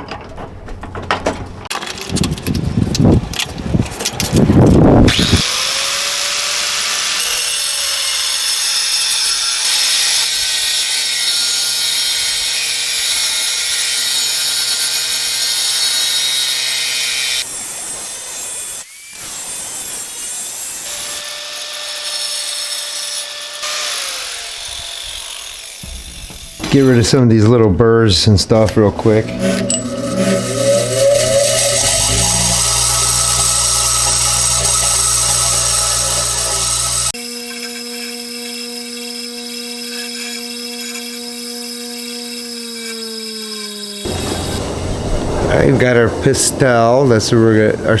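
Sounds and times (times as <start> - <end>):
angle grinder grinding metal: 4.1 - 27.5, 28.6 - 45.9
metal clanking: 25.0 - 27.5, 28.7 - 37.1.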